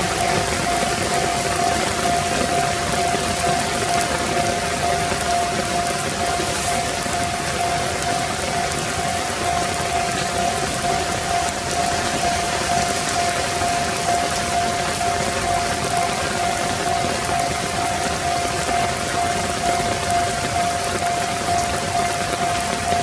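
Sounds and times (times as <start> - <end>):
level crossing electronic bell: 0.0 - 23.0.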